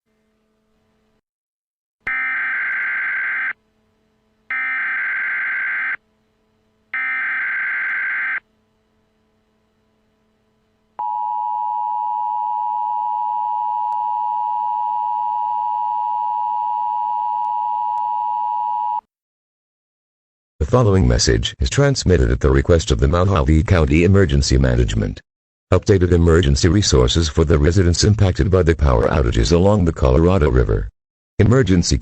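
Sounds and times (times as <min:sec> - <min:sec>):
steady attention signal tone: 0:11.0 - 0:17.4.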